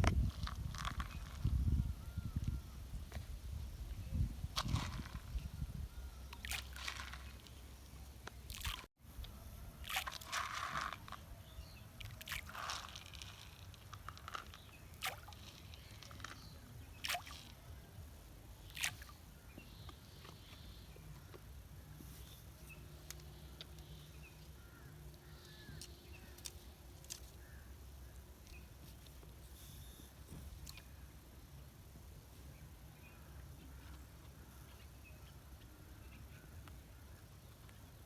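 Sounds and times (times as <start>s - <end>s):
shallow water splashing: 6.3s - 7.6s, 8.5s - 8.9s, 9.8s - 11.2s, 12.0s - 17.6s.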